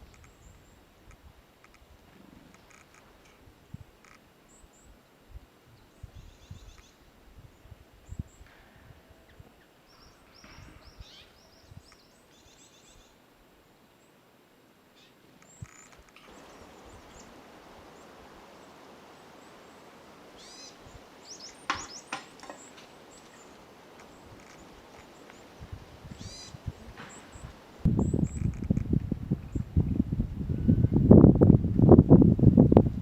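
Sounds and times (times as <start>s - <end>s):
small birds chirping: 5.8s - 8.5s, 9.3s - 13.2s, 15.0s - 29.8s
steady hiss: 9.7s - 28.9s.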